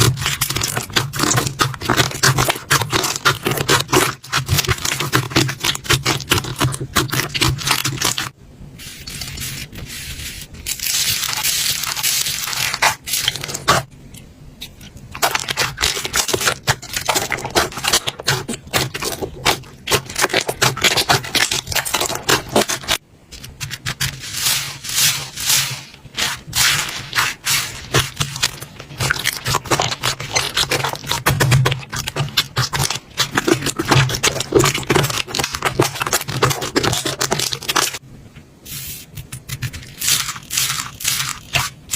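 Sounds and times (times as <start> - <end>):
slime crackling and popping: 0.0 - 8.4, 15.1 - 25.3, 26.2 - 38.0.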